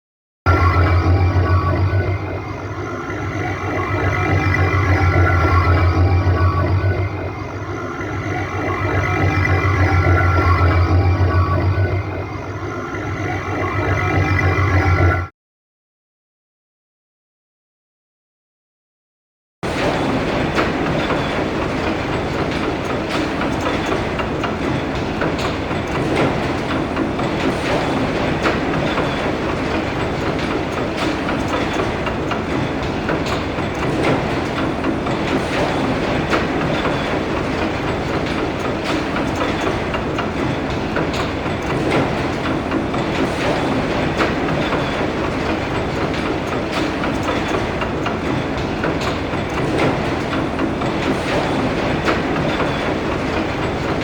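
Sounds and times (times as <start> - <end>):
heavy mechanical rumble: 0.5 - 15.3.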